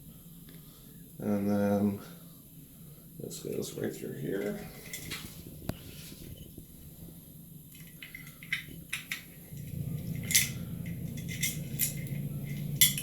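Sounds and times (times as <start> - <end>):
steady low hum: 0.0 - 13.0
metal parts clicking and clinking: 4.4 - 5.3, 7.7 - 13.0.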